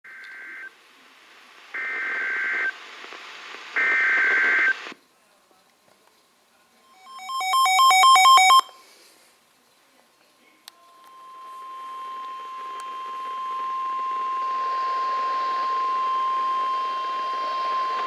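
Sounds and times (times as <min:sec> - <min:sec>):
radio hiss: 0:00.2 - 0:05.0, 0:10.6 - 0:18.0
two-pitch electronic alert beeping: 0:06.9 - 0:08.7
buzzy digital data tones: 0:10.9 - 0:18.0.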